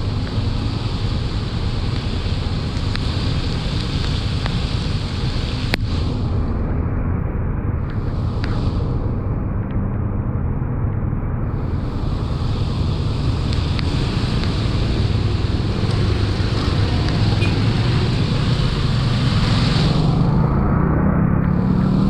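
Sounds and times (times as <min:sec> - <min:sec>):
high hiss: 0:00.0 - 0:06.4, 0:07.9 - 0:09.2, 0:11.5 - 0:22.0
road noise: 0:00.0 - 0:22.0
vehicle engine hum: 0:00.0 - 0:22.0
wind rushing on microphone: 0:00.0 - 0:22.0.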